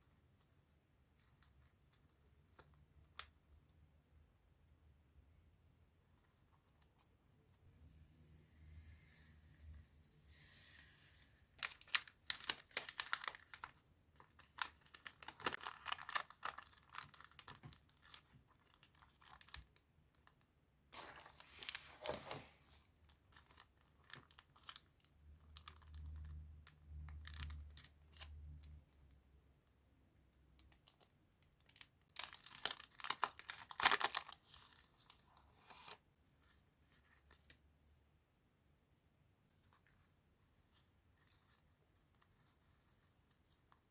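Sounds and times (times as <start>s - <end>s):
packaging torn and crinkled: 11.6s - 19.7s, 23.0s - 26.4s, 27.1s - 28.3s, 31.6s - 36.0s.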